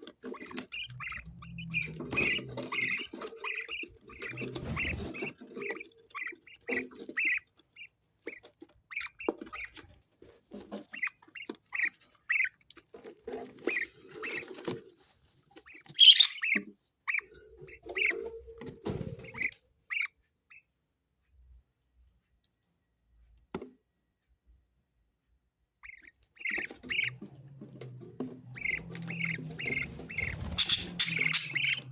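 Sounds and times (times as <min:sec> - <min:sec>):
parrot chirping: 0:00.1 - 0:09.8, 0:10.8 - 0:12.6, 0:15.6 - 0:18.4, 0:25.8 - 0:27.4, 0:28.4 - 0:31.9
parrot squawk: 0:16.0 - 0:16.5, 0:28.6 - 0:31.9.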